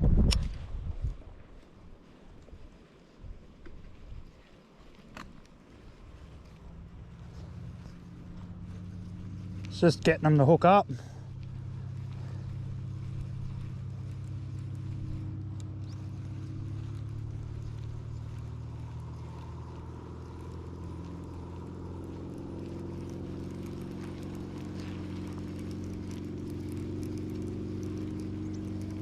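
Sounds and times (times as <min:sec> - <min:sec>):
light water patter: 0:01.0 - 0:29.0
outboard motor humming: 0:05.2 - 0:29.0.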